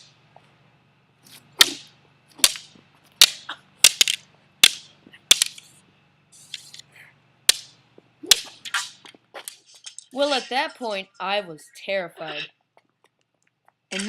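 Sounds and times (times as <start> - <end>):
sword blows cracking: 1.3 - 5.7, 7.5 - 9.7.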